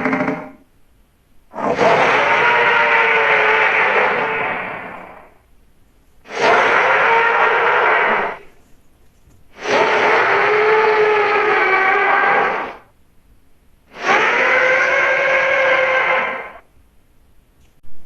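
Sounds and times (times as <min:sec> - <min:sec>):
monster calls: 0:01.5 - 0:05.3, 0:06.3 - 0:08.5, 0:09.6 - 0:12.9, 0:13.9 - 0:16.6.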